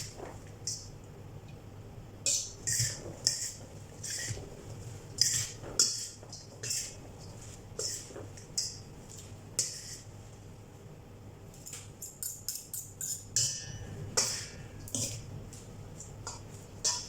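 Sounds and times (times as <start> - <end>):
fork tossing salad in bowl: 2.3 - 10.3, 14.2 - 15.3, 16.0 - 17.0.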